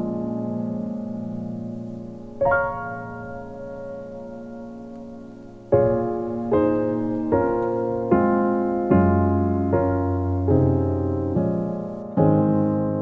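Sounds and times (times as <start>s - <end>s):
piano chords ringing: 0.0s - 13.0s.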